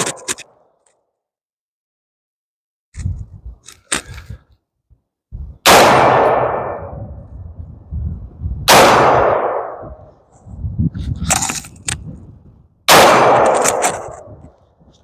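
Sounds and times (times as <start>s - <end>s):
rifle shots echoing: 5.6s - 7.0s, 8.7s - 10.0s, 12.9s - 14.2s.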